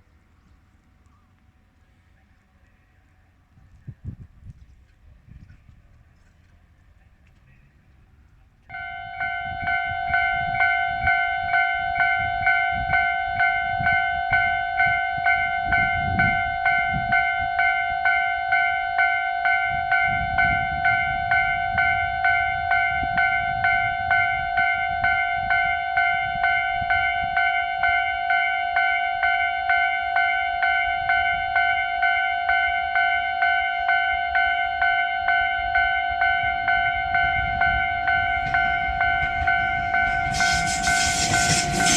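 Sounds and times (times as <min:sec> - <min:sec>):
level crossing bell ringing: 0:20.4 - 0:41.9.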